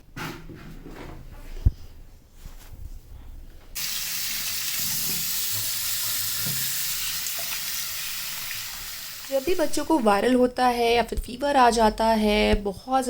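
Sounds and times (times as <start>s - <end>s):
water running from a tap: 3.8s - 10.0s.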